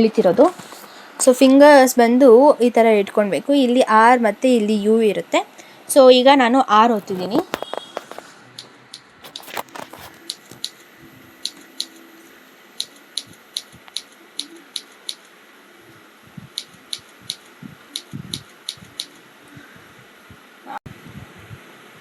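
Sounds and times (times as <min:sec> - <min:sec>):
keyboard keys clicking: 0:07.0 - 0:10.8, 0:16.6 - 0:19.2.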